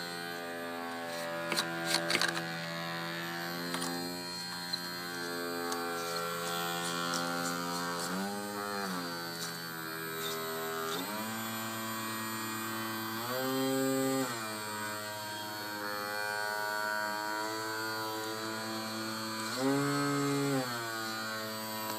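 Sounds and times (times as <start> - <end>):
sewing machine motor whining: 1.1 - 15.5.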